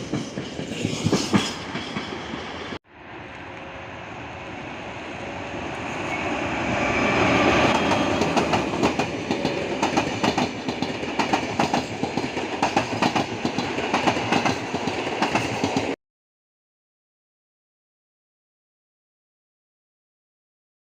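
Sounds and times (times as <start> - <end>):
train wheels clacking over rail joints: 0.0 - 2.6, 7.6 - 16.0.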